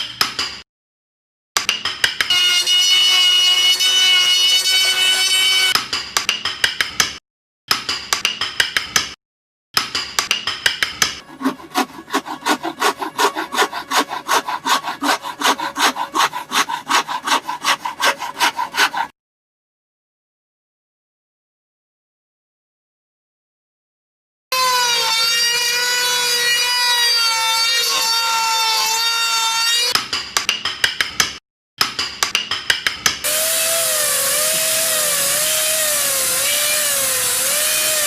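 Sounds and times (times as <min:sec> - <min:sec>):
hand tool strokes on wood: 0:11.2 - 0:19.1, 0:33.3 - 0:38.0.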